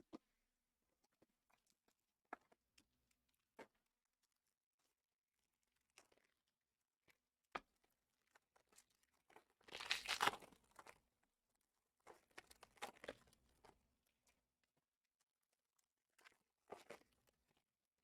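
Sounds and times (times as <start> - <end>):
packaging crinkling: 9.8 - 10.5
packaging tearing: 9.8 - 10.5.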